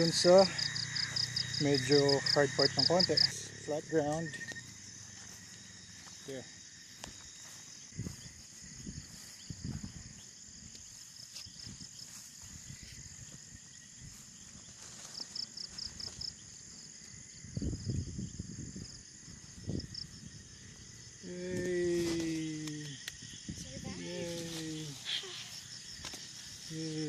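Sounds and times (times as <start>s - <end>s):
rapid pulsed chirps: 0.0s - 6.5s
insects chirring: 0.0s - 27.0s.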